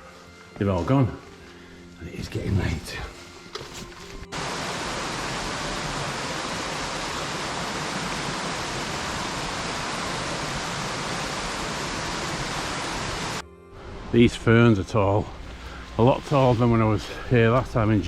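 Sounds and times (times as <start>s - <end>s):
running water rushing: 4.3s - 13.4s.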